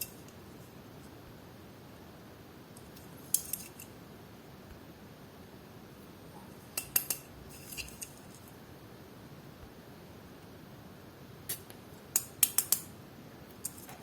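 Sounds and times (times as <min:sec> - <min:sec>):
faint steady background noise: 0:00.0 - 0:14.0
small hard objects clicking: 0:12.2 - 0:12.9.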